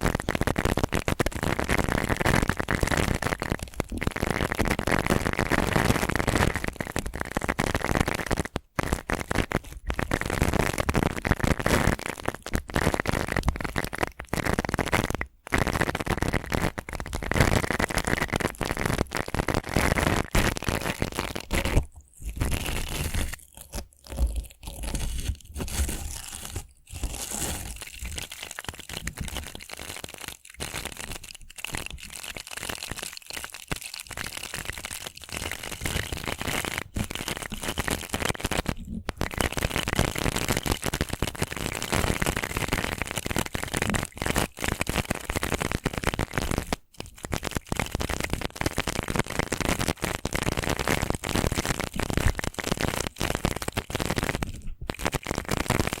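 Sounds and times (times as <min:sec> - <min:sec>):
stiff brush scratching: 0:21.5 - 0:28.4.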